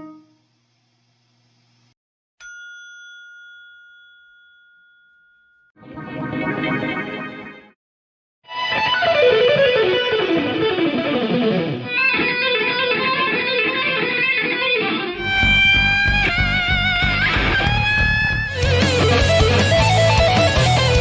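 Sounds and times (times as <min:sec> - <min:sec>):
electric guitar playing: 0:08.5 - 0:21.0.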